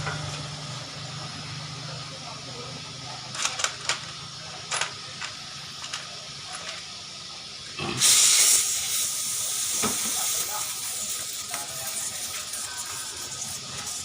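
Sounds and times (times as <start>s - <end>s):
compressed air hissing: 7.8s - 14.0s.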